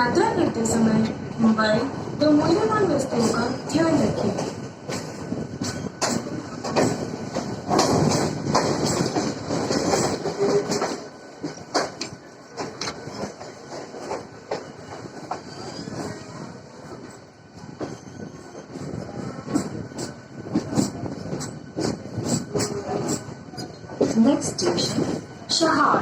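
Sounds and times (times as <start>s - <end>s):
train rumble inside coach: 0.0s - 26.0s
wheels clicking over rail joints: 3.0s - 16.2s.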